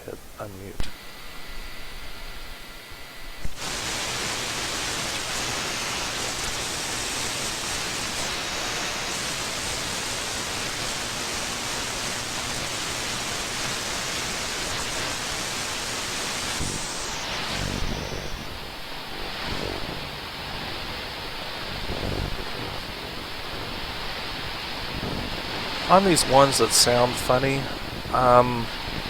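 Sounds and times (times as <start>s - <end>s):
radio static hiss: 0.0s - 29.0s
click: 0.8s - 1.0s.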